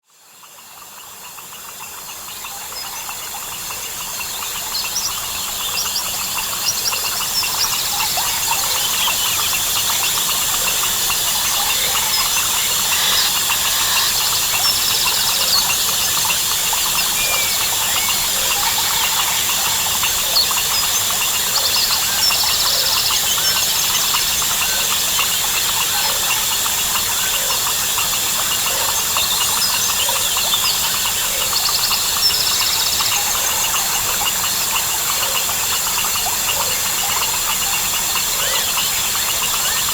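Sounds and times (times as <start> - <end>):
frogs calling: 0.1 - 39.9
insect trilling: 1.6 - 39.9.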